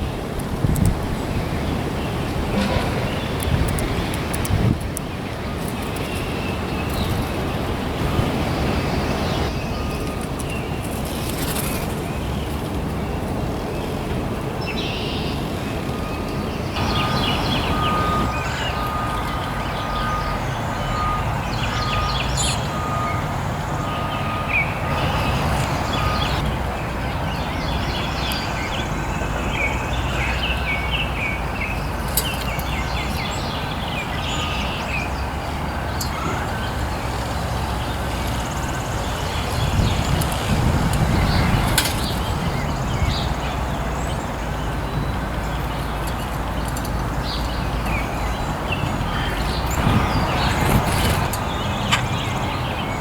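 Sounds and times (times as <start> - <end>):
songbirds chirping: 0.0 - 53.0
steady low rumble: 2.1 - 5.2
faint broken beeping tone: 2.5 - 3.8.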